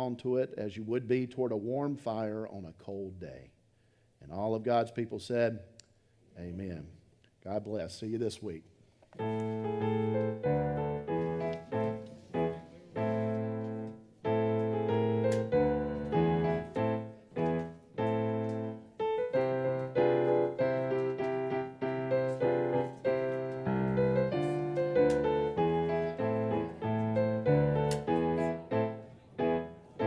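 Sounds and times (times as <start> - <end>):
slow piano chords: 9.2 - 30.0.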